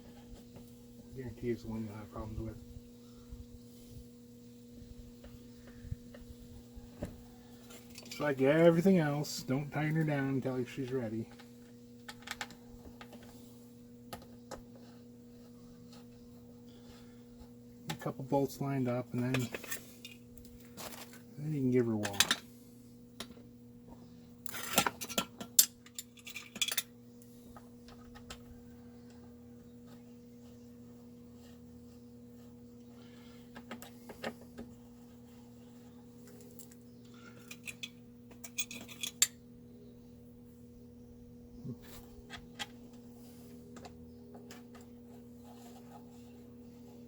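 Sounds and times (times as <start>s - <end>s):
steady low hum: 0.0s - 47.0s
metal tools clinking: 24.5s - 26.9s, 37.4s - 39.4s.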